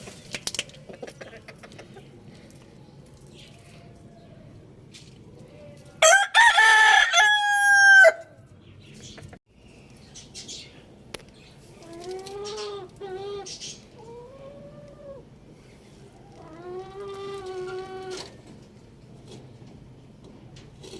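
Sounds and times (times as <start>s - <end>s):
chickens calling: 0.0s - 2.6s, 5.4s - 8.3s, 11.5s - 18.6s
rooster crowing: 6.0s - 8.3s.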